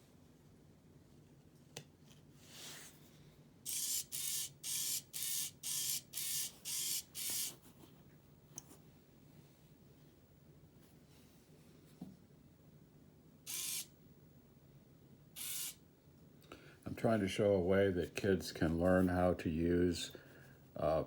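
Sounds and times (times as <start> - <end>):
servo motor whirring: 3.7 - 7.5, 13.5 - 13.9, 15.4 - 15.8.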